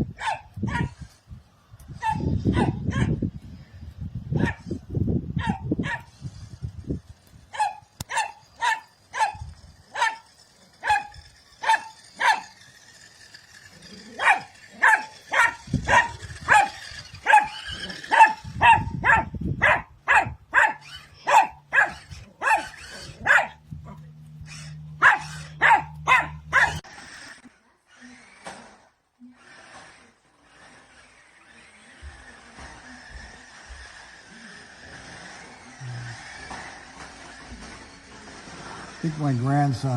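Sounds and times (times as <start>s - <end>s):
dog barking: 0.2s - 0.9s, 7.6s - 9.4s, 10.0s - 12.5s, 14.2s - 23.6s, 25.0s - 26.8s.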